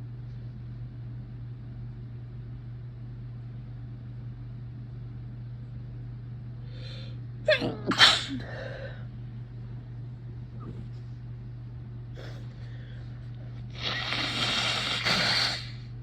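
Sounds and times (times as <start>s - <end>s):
electric fan humming: 0.0s - 16.0s
person sneezing: 7.5s - 8.7s.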